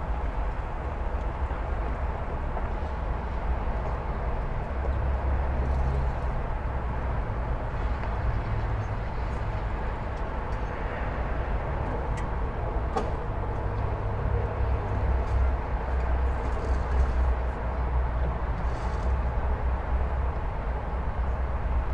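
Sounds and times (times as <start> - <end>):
freeway traffic rumble: 0.0 - 21.9.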